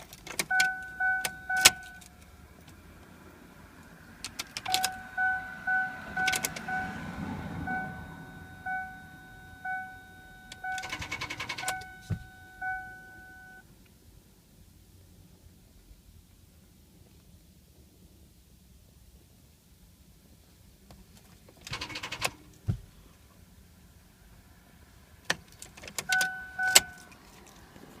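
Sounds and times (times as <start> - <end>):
ignition clicking: 0.0 - 2.8, 4.2 - 6.8, 9.6 - 13.2, 25.3 - 27.1
warning chime dinging: 0.5 - 2.0, 4.7 - 13.6, 26.1 - 27.1.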